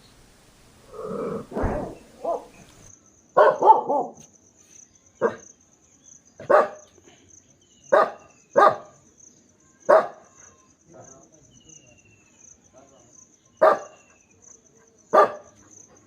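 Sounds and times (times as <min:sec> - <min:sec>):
dog barking: 0:01.5 - 0:02.6, 0:03.4 - 0:04.2, 0:05.2 - 0:05.4, 0:06.4 - 0:06.9, 0:07.9 - 0:09.0, 0:09.9 - 0:10.3, 0:13.6 - 0:14.0, 0:15.1 - 0:15.7.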